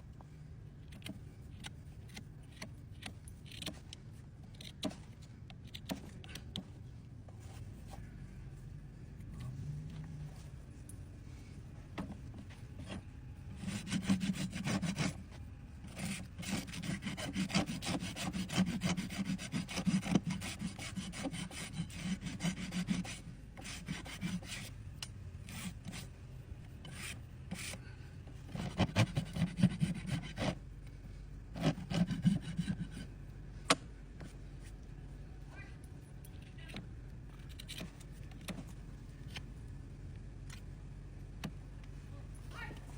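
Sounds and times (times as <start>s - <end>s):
rasp filing a hoof: 12.8s - 24.7s, 25.4s - 26.1s, 26.8s - 27.8s, 28.5s - 30.6s, 31.5s - 33.1s.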